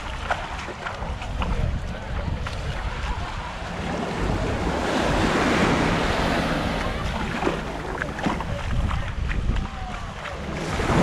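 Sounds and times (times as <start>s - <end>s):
wind rumbling on microphone: 1.0s - 11.0s
wave breaking on beach: 3.0s - 8.8s.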